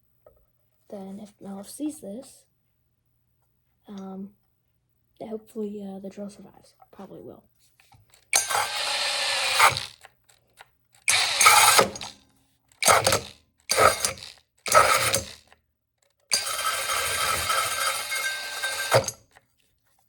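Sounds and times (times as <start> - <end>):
cordless drill motor whining: 8.4 - 10.1, 11.0 - 12.2, 12.8 - 15.5, 16.3 - 19.2.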